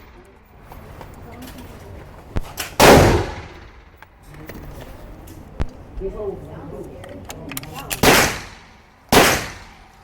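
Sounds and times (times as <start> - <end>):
loud shotgun shot: 2.6 - 3.7, 8.0 - 9.7.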